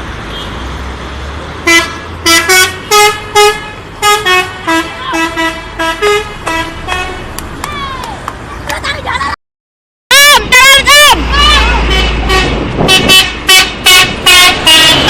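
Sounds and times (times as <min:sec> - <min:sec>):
bus horn blasts playing tune: 0:01.6 - 0:07.4, 0:10.1 - 0:11.2, 0:11.8 - 0:15.0.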